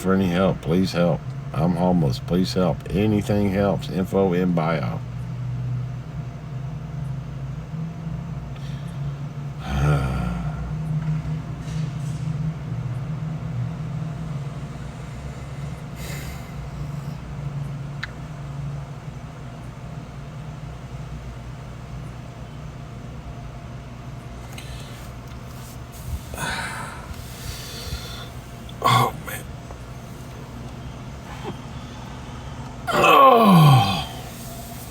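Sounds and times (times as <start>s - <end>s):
steady low hum: 0.0s - 34.9s
heavy breath or sigh: 9.6s - 10.8s, 24.5s - 29.4s, 32.9s - 34.9s
person breathing or sniffing: 24.5s - 29.4s, 33.7s - 34.9s.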